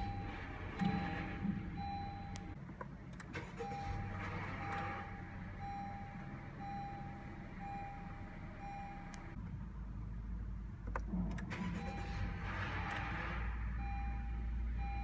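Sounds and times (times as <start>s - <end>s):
car warning chime: 0.0s - 2.6s, 3.5s - 9.4s, 13.8s - 15.0s.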